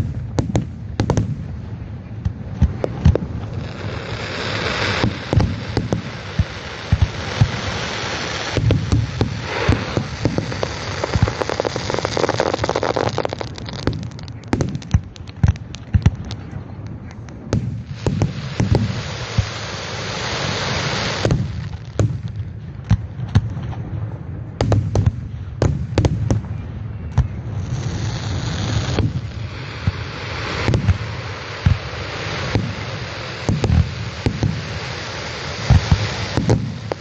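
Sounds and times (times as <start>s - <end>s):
fireworks bangs: 0.0s - 37.0s
fireworks hiss: 2.3s - 16.4s, 17.5s - 22.4s, 27.3s - 37.0s.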